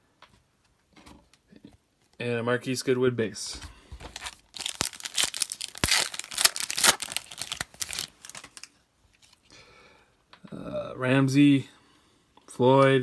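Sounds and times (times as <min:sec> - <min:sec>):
foil wrapper tearing and crinkling: 0:04.0 - 0:09.4.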